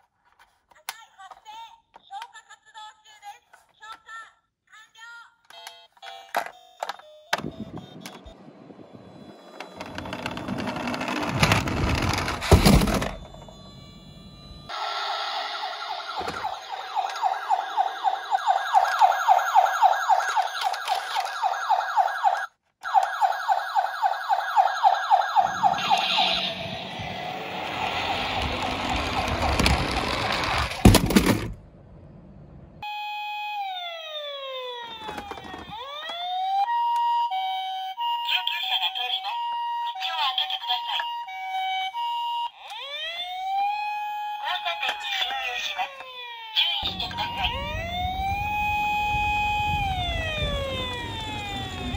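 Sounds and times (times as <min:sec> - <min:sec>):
toy siren warbling: 0:05.5 - 0:30.8, 0:32.8 - 0:51.9
falling multi-tone glide: 0:07.5 - 0:21.2, 0:25.0 - 0:32.4
toy car wheels rolling and clattering: 0:09.3 - 0:13.8, 0:20.0 - 0:21.7, 0:25.6 - 0:31.6, 0:34.9 - 0:36.1.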